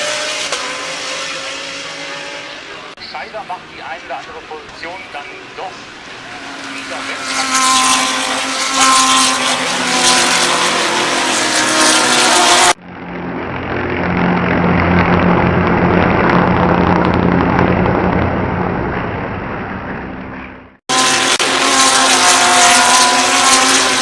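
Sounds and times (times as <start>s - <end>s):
race car engines at speed: 0.0s - 24.0s
race car passing by: 4.8s - 16.4s, 20.4s - 24.0s.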